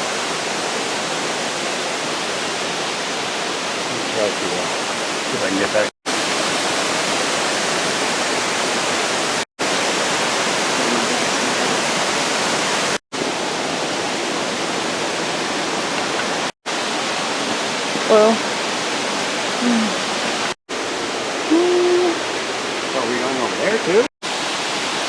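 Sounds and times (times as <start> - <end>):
waterfall roaring: 0.0 - 25.0.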